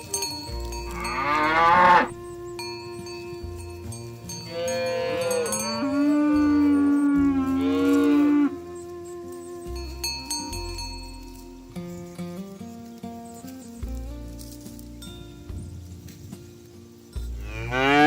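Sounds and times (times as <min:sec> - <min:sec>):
cattle mooing: 0:00.0 - 0:09.5, 0:17.4 - 0:18.0
background music tones: 0:00.0 - 0:18.0.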